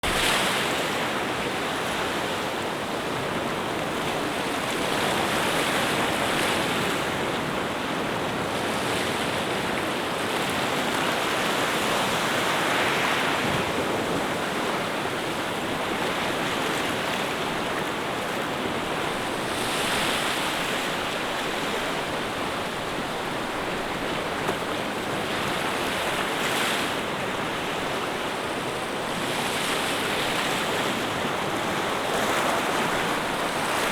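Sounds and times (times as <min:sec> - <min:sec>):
waves washing: 0:00.0 - 0:01.4, 0:18.6 - 0:33.9.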